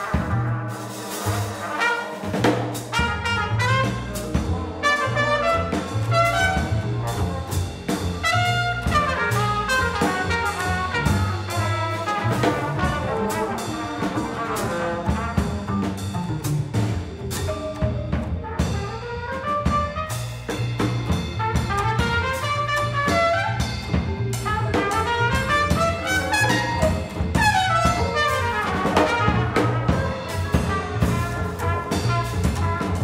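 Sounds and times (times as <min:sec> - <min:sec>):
alto saxophone: 0:00.0 - 0:16.0, 0:18.5 - 0:33.0
double bass: 0:00.0 - 0:33.0
drum kit: 0:00.0 - 0:33.0
trombone: 0:00.0 - 0:33.0
trumpet: 0:00.0 - 0:33.0.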